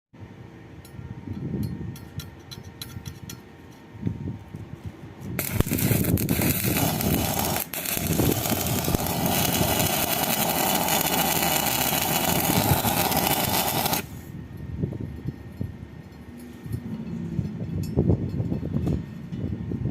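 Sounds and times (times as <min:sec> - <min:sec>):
arc welding crackling sizzle: 0:05.4 - 0:14.3.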